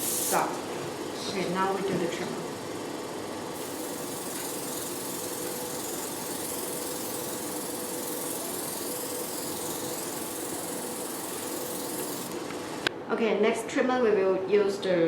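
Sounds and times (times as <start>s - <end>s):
spray hissing: 0.0s - 1.1s, 2.4s - 12.9s
motor hum: 0.0s - 12.9s.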